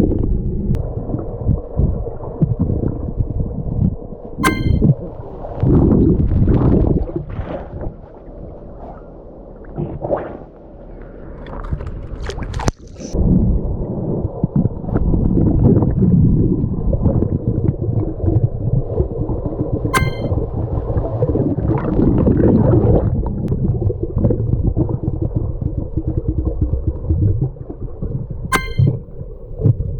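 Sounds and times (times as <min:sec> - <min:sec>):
muffled water sloshing underwater: 0:00.1 - 0:12.9.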